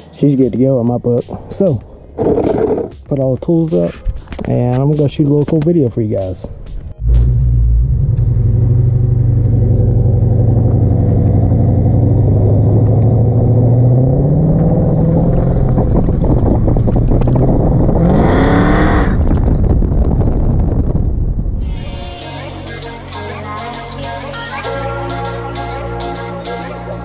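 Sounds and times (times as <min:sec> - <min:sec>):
car engine running and revving: 0:07.0 - 0:20.2.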